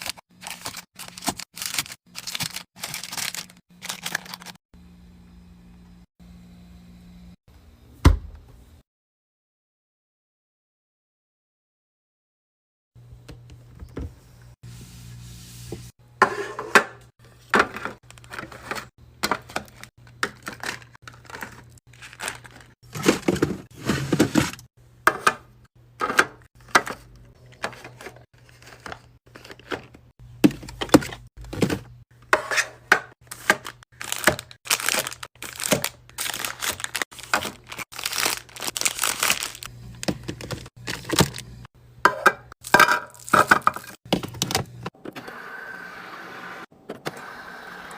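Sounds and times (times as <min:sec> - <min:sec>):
plastic packaging crinkling: 0:00.0 - 0:04.6, 0:20.4 - 0:23.4, 0:33.3 - 0:41.6
items clacking set down: 0:17.5 - 0:25.4, 0:26.0 - 0:41.5.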